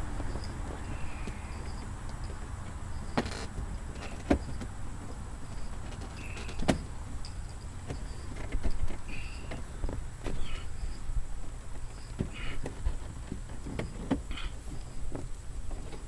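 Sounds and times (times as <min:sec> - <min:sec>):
low background rumble: 0:00.0 - 0:16.0.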